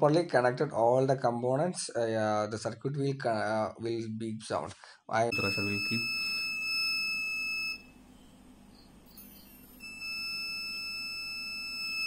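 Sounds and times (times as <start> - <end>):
high-pitched electronic alarm tone: 5.3 - 12.0.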